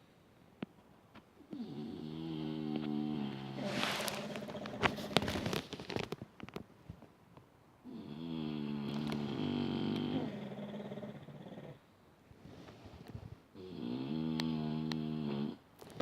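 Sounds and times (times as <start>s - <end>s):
pet snoring: 1.5s - 5.4s, 7.8s - 11.8s, 13.6s - 15.6s.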